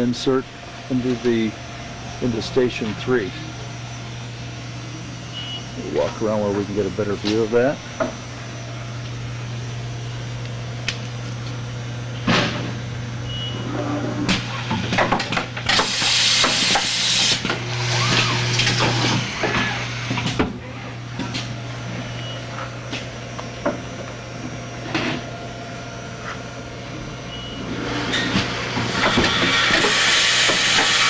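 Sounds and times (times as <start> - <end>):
machine hum: 0.0 - 31.0
compressed-air hiss: 15.7 - 17.4, 29.0 - 31.0.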